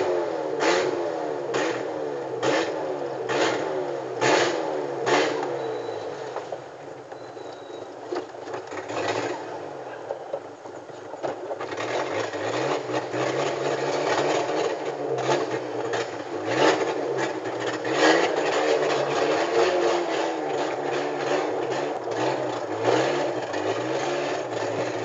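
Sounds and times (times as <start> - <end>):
car engine revving: 0.0 - 6.6, 8.5 - 9.9, 11.3 - 25.0
exhaust cracks: 7.9 - 25.0.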